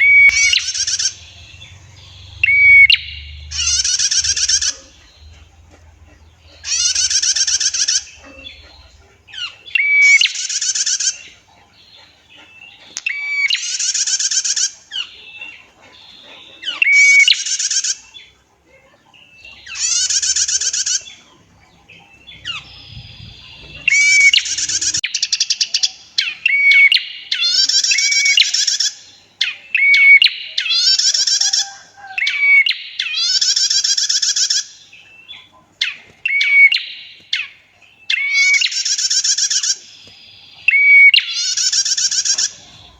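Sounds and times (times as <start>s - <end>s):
bird call with buzzy trill: 0.0s - 5.4s, 22.6s - 25.4s.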